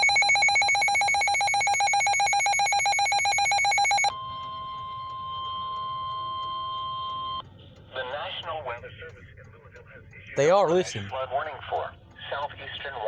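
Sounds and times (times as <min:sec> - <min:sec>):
electronic alarm trilling: 0:00.0 - 0:07.4.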